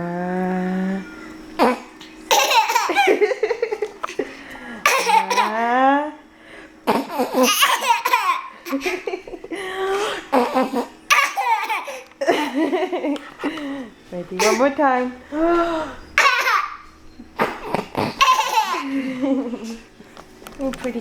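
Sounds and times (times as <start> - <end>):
toddler laughing: 1.6 - 5.7, 6.9 - 9.4, 10.0 - 12.9, 14.4 - 14.7, 15.6 - 16.8, 17.4 - 19.6.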